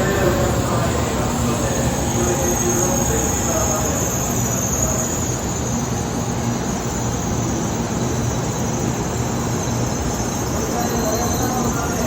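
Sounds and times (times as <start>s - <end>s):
train rumbling past: 0.0s - 12.0s.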